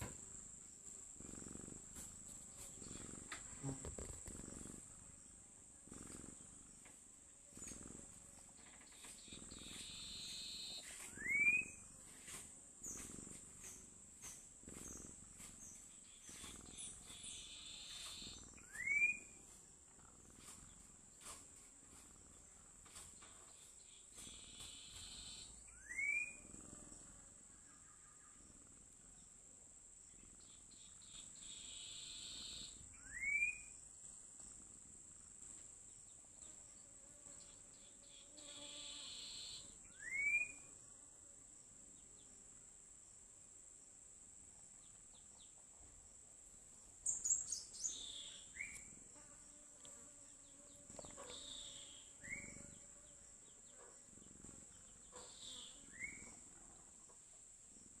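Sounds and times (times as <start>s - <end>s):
cricket trill: 0.0s - 19.6s, 22.3s - 29.3s, 30.0s - 43.2s, 44.7s - 58.0s
cat snoring: 0.0s - 23.1s, 24.0s - 27.5s, 30.2s - 33.7s, 50.9s - 52.9s, 54.1s - 56.8s.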